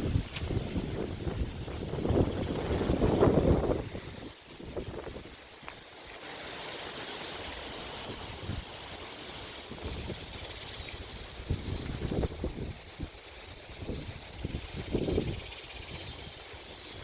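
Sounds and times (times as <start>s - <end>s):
wind buffeting microphone: 0.0s - 5.4s, 8.0s - 8.8s, 9.6s - 16.4s
wind blowing: 0.0s - 17.0s.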